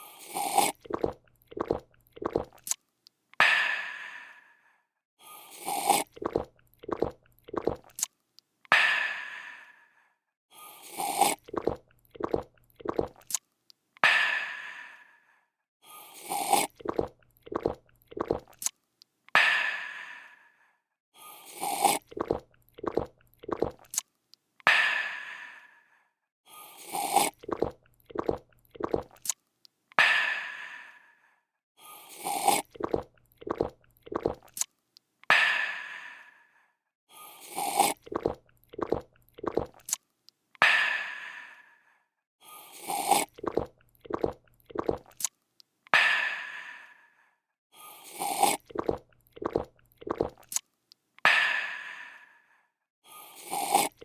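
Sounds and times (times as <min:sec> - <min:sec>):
person gulping: 0:00.0 - 0:02.8, 0:05.6 - 0:08.0, 0:11.0 - 0:13.3, 0:16.3 - 0:18.7, 0:21.6 - 0:24.0, 0:26.9 - 0:29.3, 0:32.2 - 0:34.6, 0:37.6 - 0:40.0, 0:42.9 - 0:45.3, 0:48.2 - 0:50.6
person slurping a drink: 0:00.0 - 0:02.8, 0:05.4 - 0:08.1, 0:10.8 - 0:13.4, 0:16.1 - 0:18.7, 0:21.3 - 0:24.0, 0:26.7 - 0:29.4, 0:32.0 - 0:34.7, 0:37.2 - 0:40.0, 0:42.6 - 0:45.3, 0:47.9 - 0:50.6, 0:53.2 - 0:54.0.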